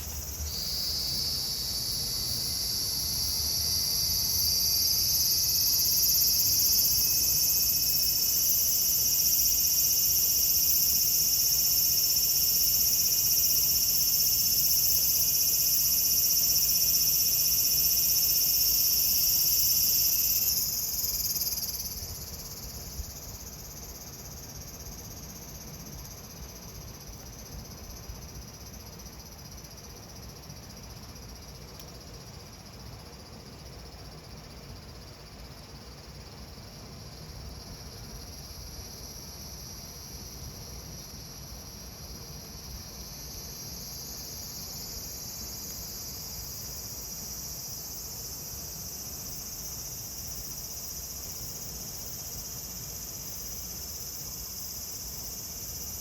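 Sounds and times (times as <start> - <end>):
cicada buzzing: 0.0 - 26.9, 43.1 - 56.0.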